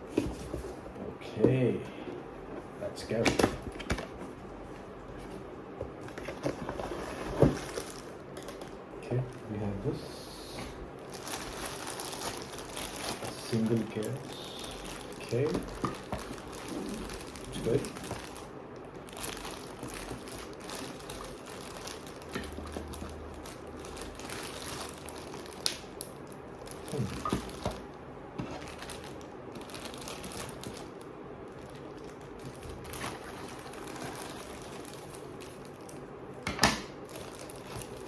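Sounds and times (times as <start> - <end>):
plastic packaging crinkling: 6.0 - 9.8, 11.0 - 36.4, 37.0 - 38.0.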